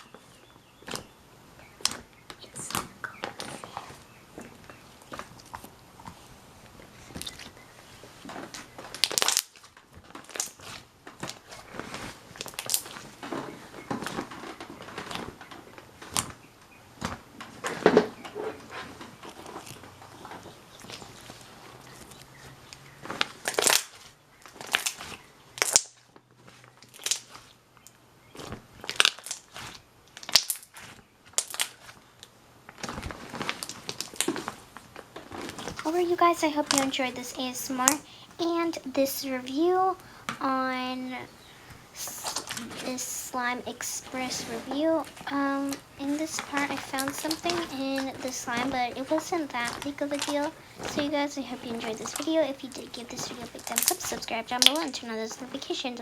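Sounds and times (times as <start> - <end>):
slime squishing and crackling: 8.6 - 13.2, 26.6 - 27.5, 28.3 - 32.0, 42.0 - 56.0.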